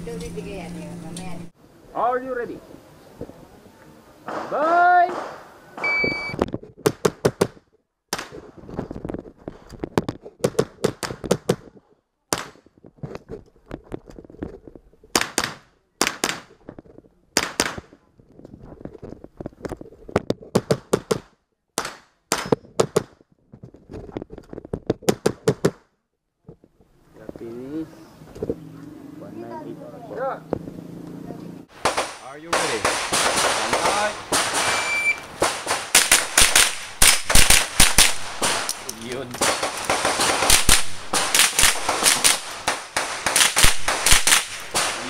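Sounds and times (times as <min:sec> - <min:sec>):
shot timer beep: 0:05.8 - 0:06.4, 0:34.8 - 0:35.2
rifle firing rapid shots: 0:31.8 - 0:45.0.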